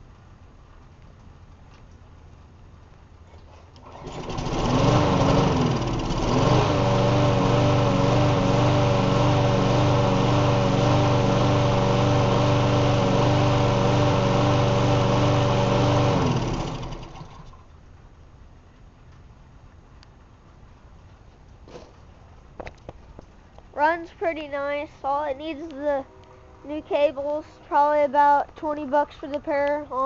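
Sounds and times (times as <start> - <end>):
lawn mower engine: 3.7 - 17.7.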